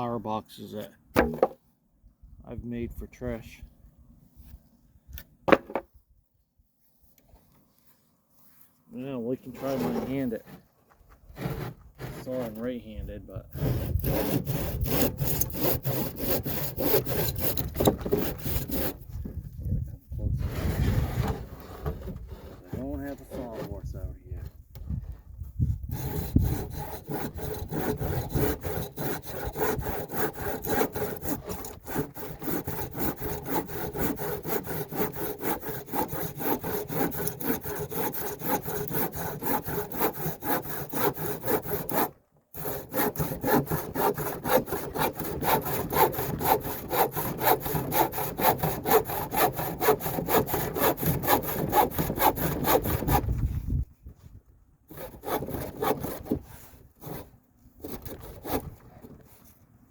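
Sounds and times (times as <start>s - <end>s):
handsaw rasping through wood: 11.3s - 12.8s, 13.4s - 19.2s, 20.4s - 24.0s, 25.8s - 53.5s, 54.9s - 59.4s.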